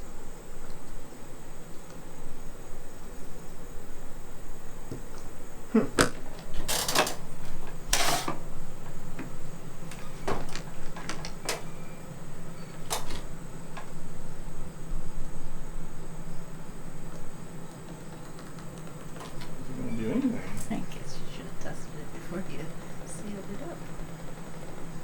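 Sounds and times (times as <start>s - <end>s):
steady low hum: 0.0s - 25.0s
door lock clicks and rattles: 12.9s - 13.3s.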